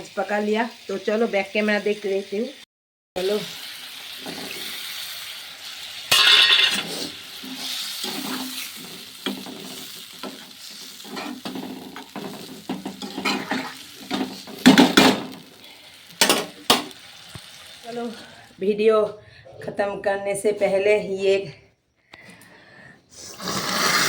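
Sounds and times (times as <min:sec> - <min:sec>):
food sizzling: 0:00.0 - 0:18.6, 0:23.2 - 0:24.0
spoon scraping in a pan: 0:06.1 - 0:14.6.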